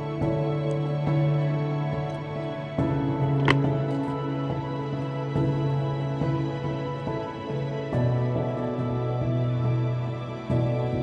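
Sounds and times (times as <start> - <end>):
soft slow instrumental music: 0.0 - 11.0.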